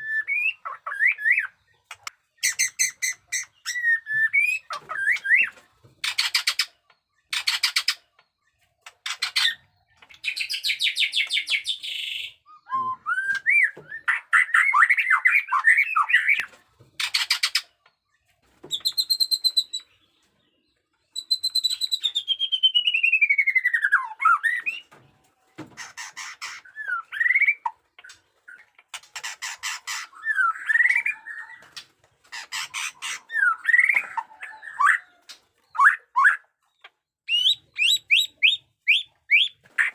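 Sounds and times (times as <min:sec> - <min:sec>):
bird singing rattles and whistles: 0:00.0 - 0:08.2, 0:08.8 - 0:17.9, 0:18.6 - 0:20.0, 0:21.0 - 0:25.0, 0:25.8 - 0:39.9.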